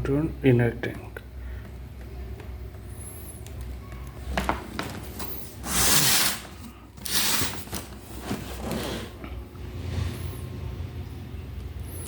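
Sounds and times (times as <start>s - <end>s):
packaging rubbing scrapes: 5.5s - 9.2s.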